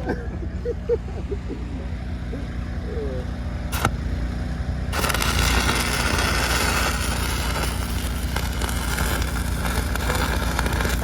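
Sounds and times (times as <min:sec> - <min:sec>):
engine droning: 0:00.0 - 0:11.0
welding arc crackling and sizzling: 0:03.6 - 0:11.0.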